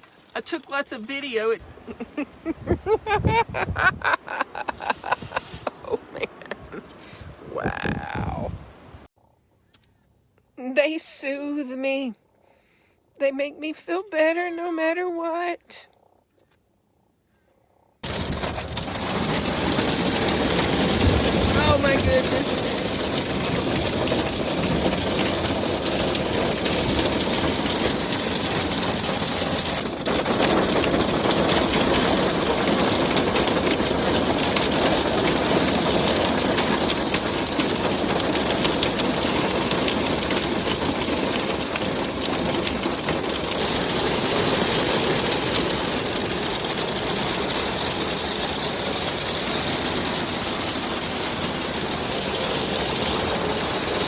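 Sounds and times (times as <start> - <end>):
hail drumming on metal roof: 18.0 - 54.0.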